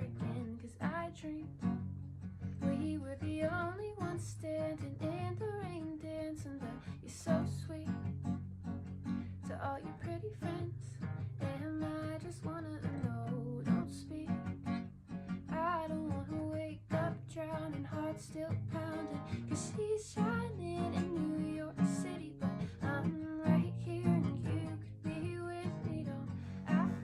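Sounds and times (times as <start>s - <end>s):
strummed acoustic guitar: 0.0s - 27.0s
person singing: 18.8s - 27.0s.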